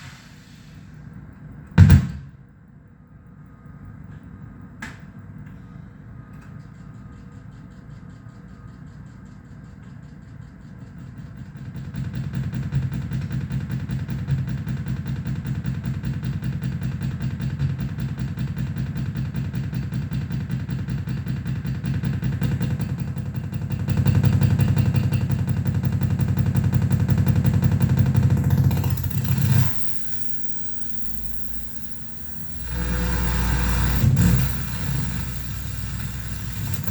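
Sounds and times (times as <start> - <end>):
low pulsing electronic buzz: 23.0 - 36.9.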